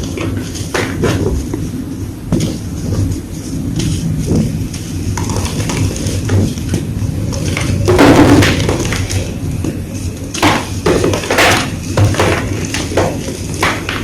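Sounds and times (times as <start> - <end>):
chalk blocks crushed crunching: 10.4 - 14.0.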